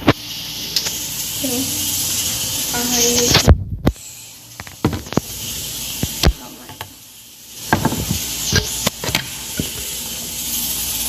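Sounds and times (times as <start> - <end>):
steady high hiss: 0.0 - 11.0
sharp knocks and clatters: 7.7 - 9.8.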